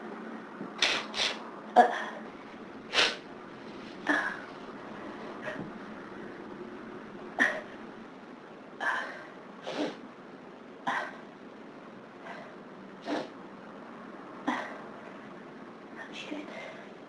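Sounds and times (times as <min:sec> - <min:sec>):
person sneezing: 0:00.8 - 0:02.2.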